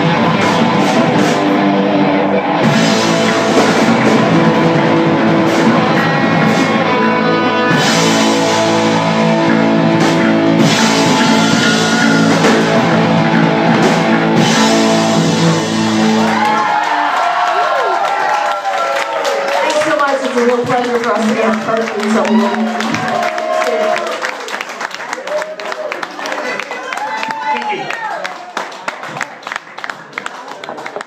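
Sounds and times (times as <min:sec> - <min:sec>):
live rock band playing: 0:00.0 - 0:16.8, 0:19.7 - 0:24.0.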